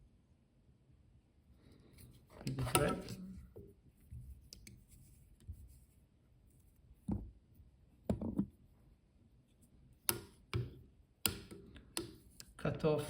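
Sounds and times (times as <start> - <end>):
faint rubbing and scratching: 1.8 - 7.1.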